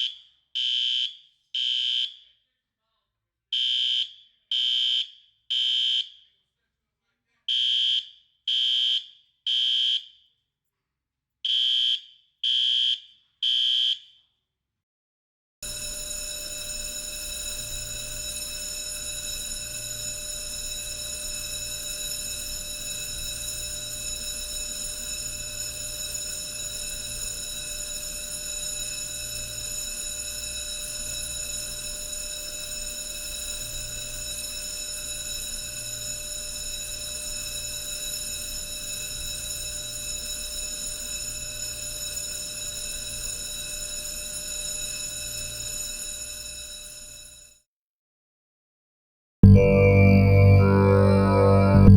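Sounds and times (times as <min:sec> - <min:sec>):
steady electronic alarm tone: 0:15.6 - 0:46.8, 0:49.4 - 0:51.9.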